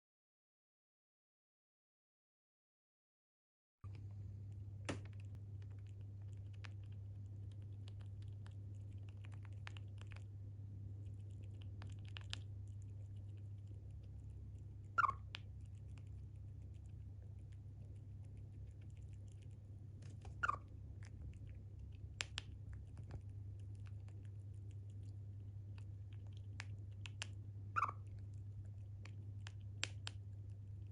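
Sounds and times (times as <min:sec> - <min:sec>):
chipmunk nibbling clicks: 0:03.9 - 0:30.9
steady low hum: 0:03.9 - 0:30.9
chipmunk calls: 0:14.8 - 0:15.4, 0:20.3 - 0:20.7, 0:27.7 - 0:28.1.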